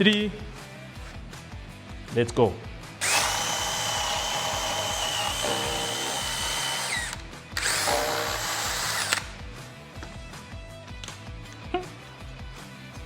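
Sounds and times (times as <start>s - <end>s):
background music with steady beat: 0.0s - 13.0s
drill whining: 3.0s - 9.5s.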